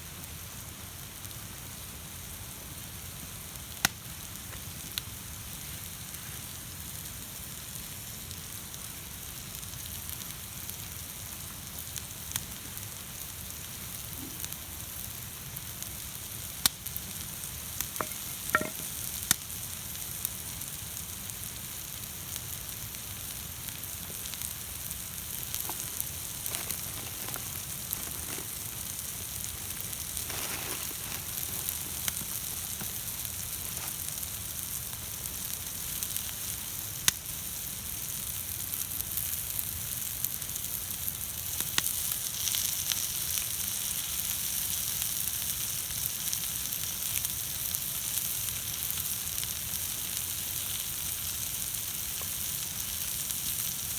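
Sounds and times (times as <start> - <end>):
food sizzling in a pan: 0.0 - 53.9
sharp pops and clicks: 25.3 - 34.0.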